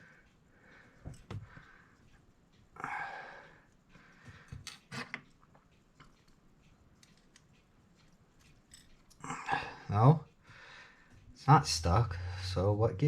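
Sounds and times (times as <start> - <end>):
small clicks on clock movement: 0.0 - 11.9
person sighing: 9.2 - 9.9.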